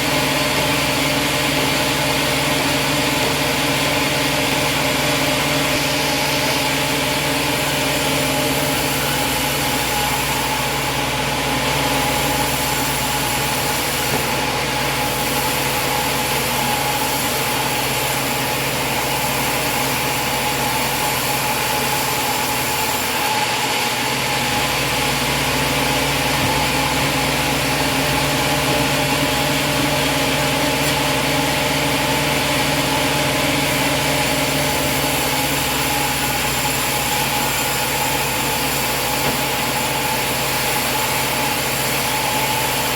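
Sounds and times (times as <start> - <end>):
sawmill engine running: 0.0 - 42.9.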